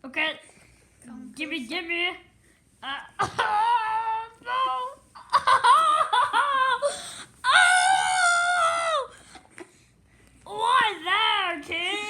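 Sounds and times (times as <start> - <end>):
high-pitched wordless cries: 2.8 - 9.2.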